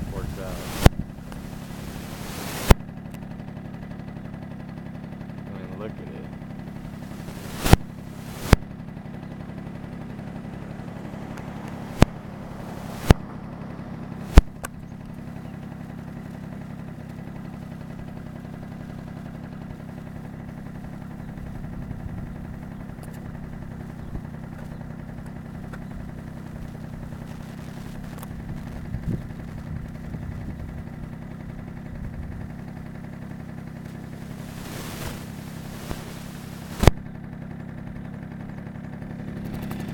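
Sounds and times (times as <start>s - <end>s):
low hum: 0.0s - 4.3s, 5.8s - 37.3s
loud clicks: 7.1s - 8.6s, 10.9s - 13.4s, 34.6s - 37.0s.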